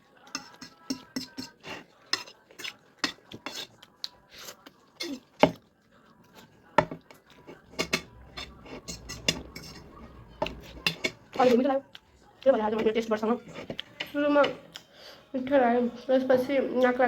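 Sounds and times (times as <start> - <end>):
cutlery scraping against a dish: 0.2 - 5.6, 6.3 - 11.7, 12.7 - 14.9.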